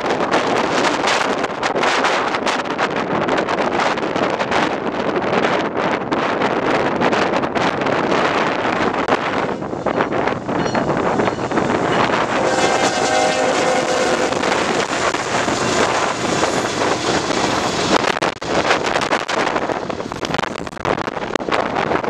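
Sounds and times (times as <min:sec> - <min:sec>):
wind buffeting microphone: 0:00.0 - 0:22.0
locomotive horn: 0:11.6 - 0:17.4.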